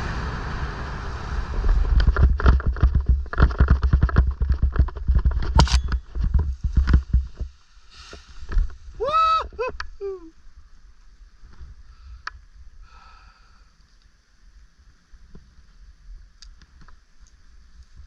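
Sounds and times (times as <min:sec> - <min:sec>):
heavy low rumble: 0:00.0 - 0:03.4.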